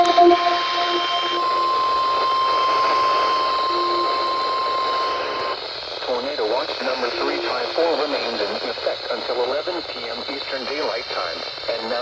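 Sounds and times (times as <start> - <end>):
steady warning alarm tone: 0.0 - 5.7, 6.8 - 8.4
radio static hiss: 1.4 - 12.0.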